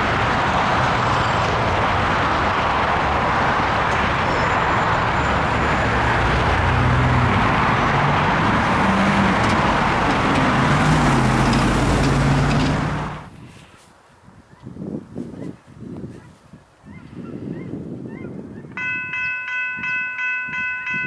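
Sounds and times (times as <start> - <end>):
low engine hum: 0.0 - 13.3
rumble of vehicles: 0.0 - 21.0.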